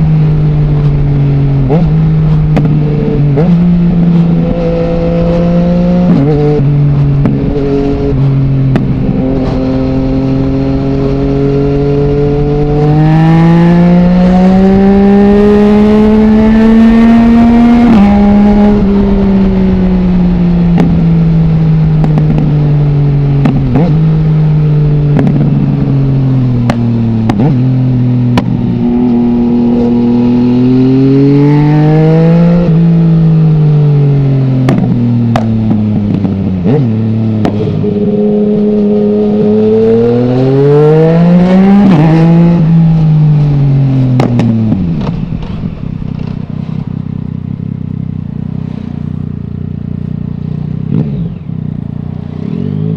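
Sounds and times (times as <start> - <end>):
motorcycle engine accelerating: 0.0 - 52.9
exhaust cracks on overrun: 44.2 - 46.9.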